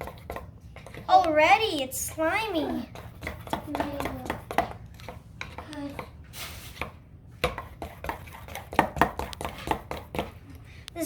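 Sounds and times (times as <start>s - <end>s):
utensil stirring slime in bowl: 0.0s - 11.0s
utensil knocking against bowl: 6.8s - 10.3s.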